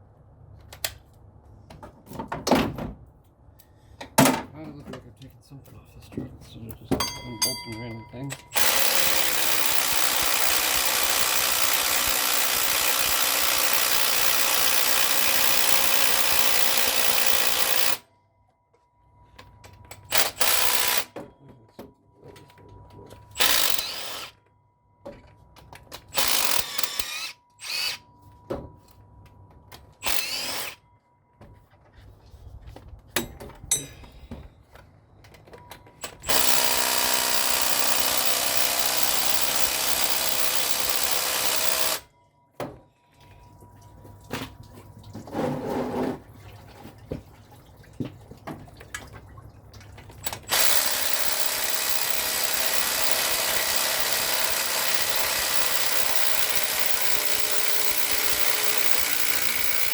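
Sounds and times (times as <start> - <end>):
power tool motor running: 8.5 - 18.0, 20.1 - 21.1, 23.4 - 24.3, 26.1 - 28.0, 30.0 - 30.8, 36.1 - 42.0, 50.5 - 59.9.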